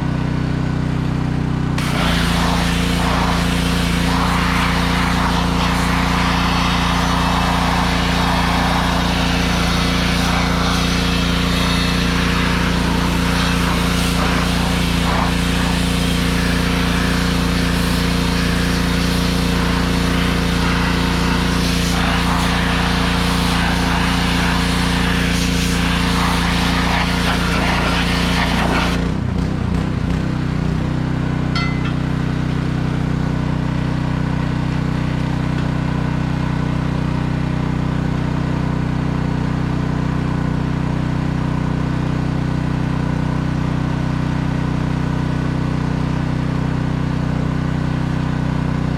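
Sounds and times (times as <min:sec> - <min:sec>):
pressure washer engine running: 0:00.0 - 0:48.9
loud hissing water spray: 0:01.8 - 0:29.2.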